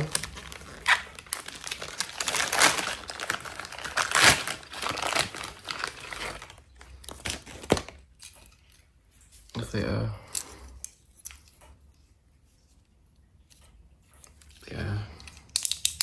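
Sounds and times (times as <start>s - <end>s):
crinkly packaging rustling: 0.0s - 9.6s.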